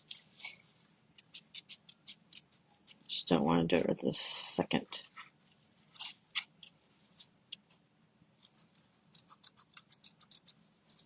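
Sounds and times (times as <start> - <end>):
small scissors snipping paper: 8.4 - 11.0.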